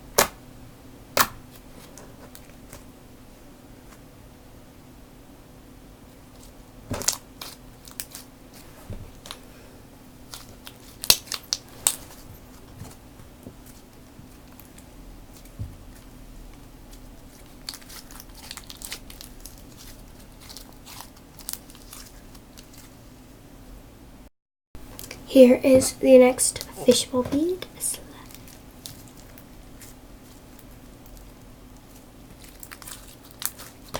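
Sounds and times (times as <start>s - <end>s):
slime crackling and popping: 10.3s - 12.0s, 17.3s - 22.9s, 28.3s - 33.9s.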